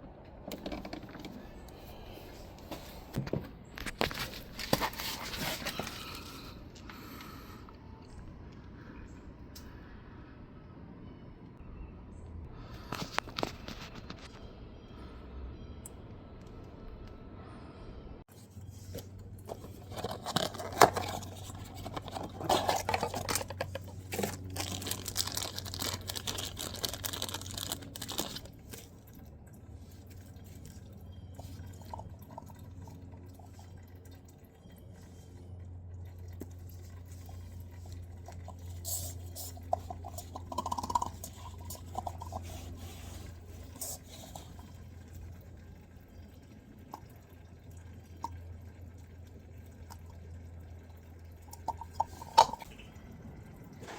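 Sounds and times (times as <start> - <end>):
steady low hum: 0.0 - 26.5
oil dripping into a drain pan: 19.1 - 42.4, 43.6 - 53.8.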